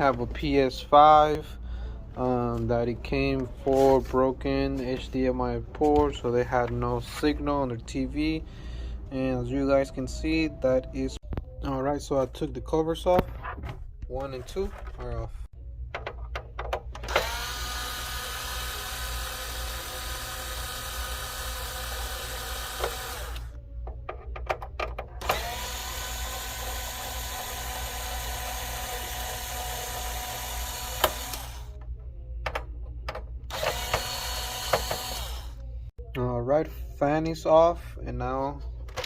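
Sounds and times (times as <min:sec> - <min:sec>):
electric screwdriver motor whining: 0:17.0 - 0:23.6, 0:25.2 - 0:31.8, 0:33.5 - 0:35.6.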